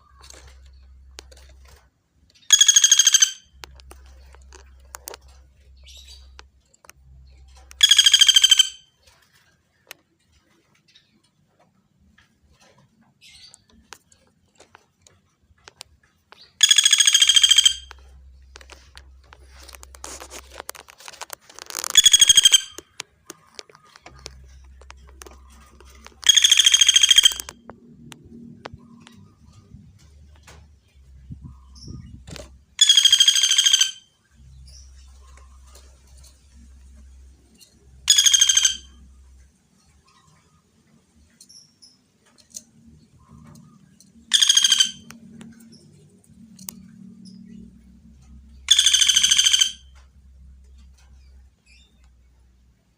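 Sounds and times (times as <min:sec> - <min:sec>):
woodpecker calling: 0:02.4 - 0:07.0, 0:07.7 - 0:09.0, 0:15.6 - 0:29.7, 0:31.3 - 0:36.7, 0:38.0 - 0:39.1, 0:43.2 - 0:45.9, 0:48.6 - 0:50.0.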